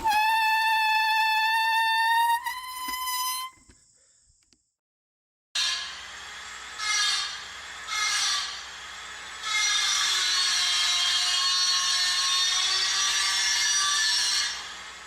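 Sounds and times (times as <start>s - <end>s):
bicycle brake squealing: 0.0s - 3.7s.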